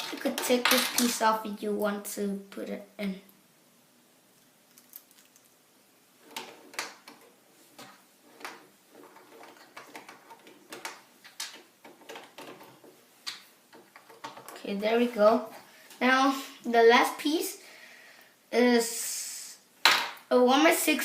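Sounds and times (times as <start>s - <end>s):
plastic bricks clicking together: 0.0s - 1.2s.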